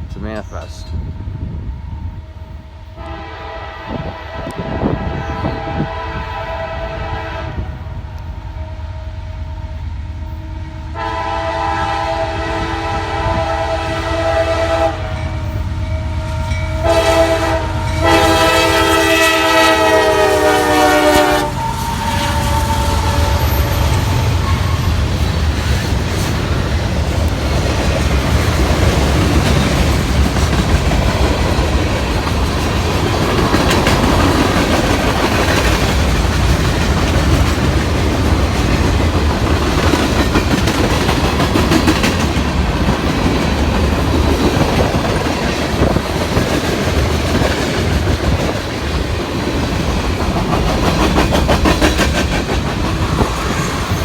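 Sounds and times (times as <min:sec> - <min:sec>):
train rumbling past: 0:00.0 - 0:54.0
train horn blasts: 0:03.0 - 0:25.0.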